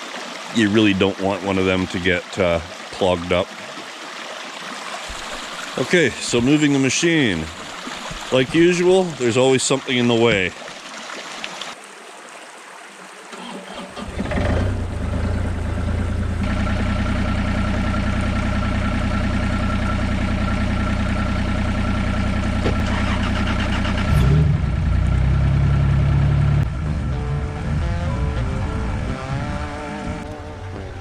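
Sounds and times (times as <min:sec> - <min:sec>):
diesel engine running: 0:14.0 - 0:31.0
music: 0:26.7 - 0:31.0.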